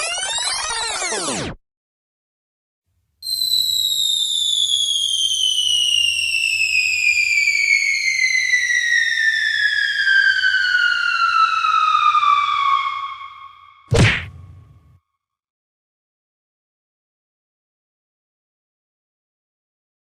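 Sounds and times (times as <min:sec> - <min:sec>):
cartoon descending whistle: 0:03.2 - 0:14.8.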